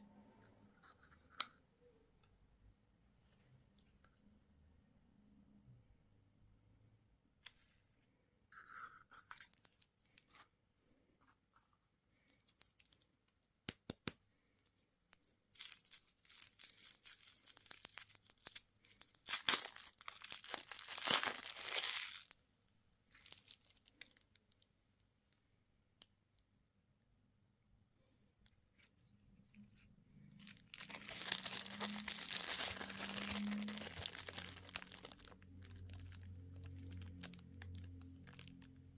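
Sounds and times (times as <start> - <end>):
candy packaging rustling: 8.6 - 10.6, 11.6 - 13.5, 14.5 - 22.4, 23.1 - 24.7, 29.4 - 38.9
packaging tearing and crinkling: 15.6 - 22.3, 30.4 - 38.8.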